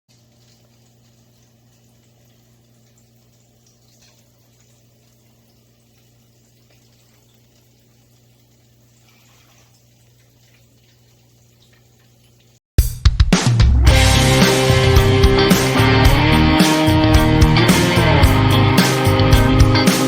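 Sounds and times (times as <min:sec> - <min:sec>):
low electrical hum: 0:00.1 - 0:12.6.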